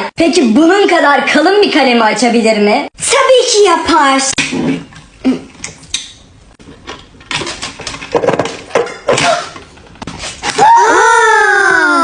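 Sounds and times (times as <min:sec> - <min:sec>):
loud wailing cry: 0:10.6 - 0:12.0.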